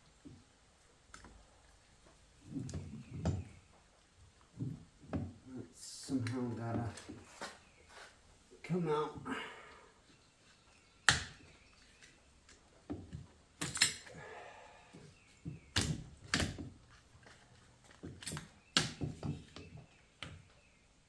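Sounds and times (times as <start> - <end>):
metal parts and tools clicking: 13.6 - 14.2.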